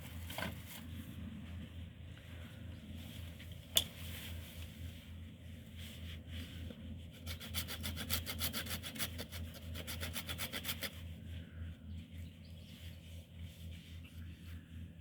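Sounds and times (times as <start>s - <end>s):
hand saw cutting wood: 7.2s - 11.0s.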